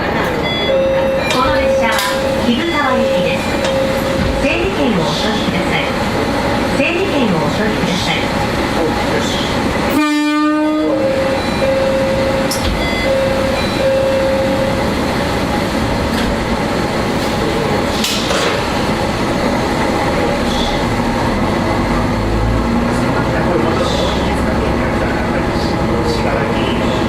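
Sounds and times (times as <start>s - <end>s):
diesel railcar running: 0.0s - 27.0s
train horn: 9.9s - 11.2s.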